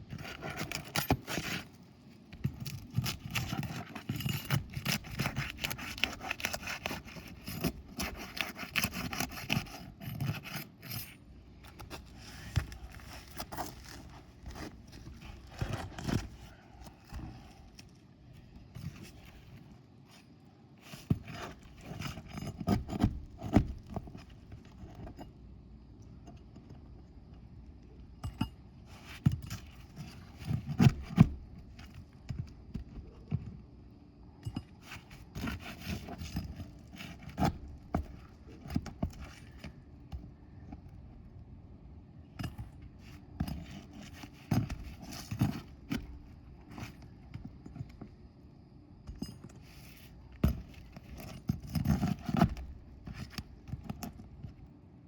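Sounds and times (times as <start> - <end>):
hand tools scraping and knocking: 2.4 - 18.0.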